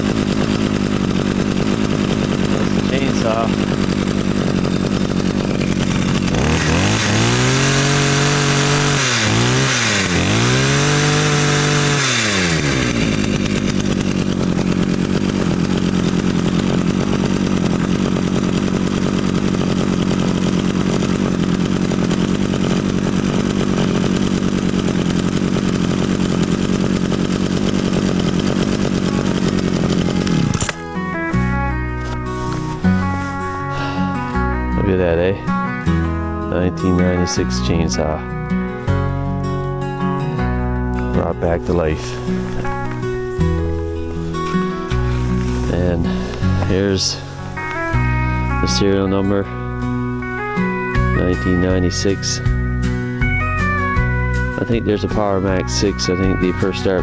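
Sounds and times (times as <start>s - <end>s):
chainsaw revving and idling: 0.0s - 57.0s.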